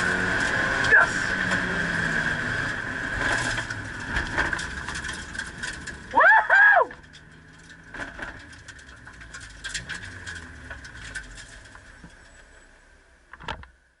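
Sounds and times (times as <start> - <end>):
car engine running low: 0.0 - 14.0
clicks and rattles: 3.2 - 6.2, 6.9 - 12.2.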